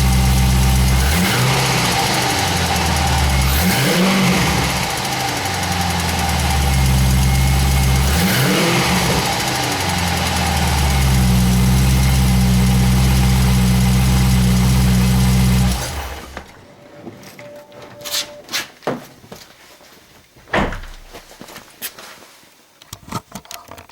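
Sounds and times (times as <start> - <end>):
car engine idling: 0.0 - 16.6.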